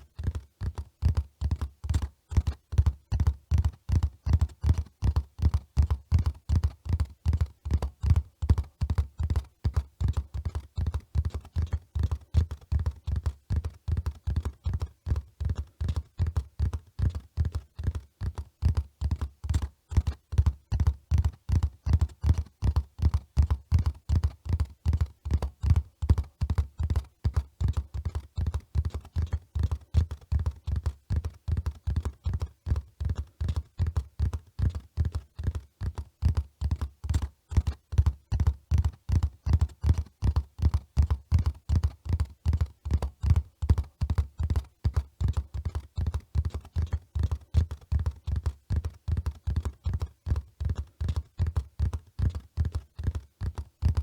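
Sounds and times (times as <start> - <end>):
horse hoofbeats at a run: 0.0 - 54.0.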